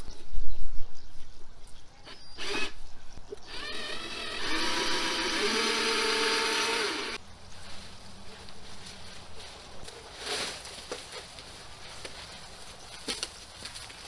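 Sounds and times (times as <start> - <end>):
power drill running: 3.5 - 7.2.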